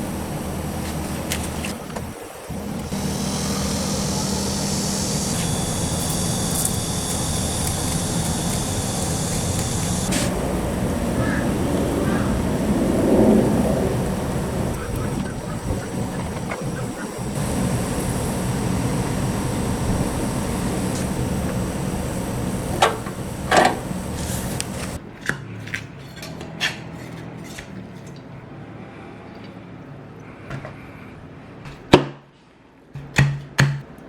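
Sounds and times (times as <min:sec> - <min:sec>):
low hum: 0:00.0 - 0:25.0
steady rushing noise: 0:00.0 - 0:25.0.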